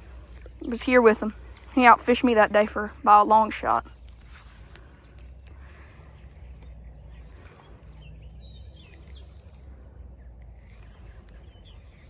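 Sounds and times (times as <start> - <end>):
faint bird chirps: 4.0 - 12.0.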